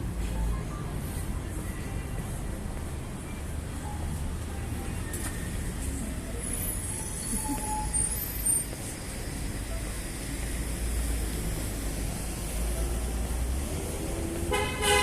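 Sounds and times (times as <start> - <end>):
traffic rumble: 0.0 - 15.0
high-pitched squeaks: 6.7 - 9.0.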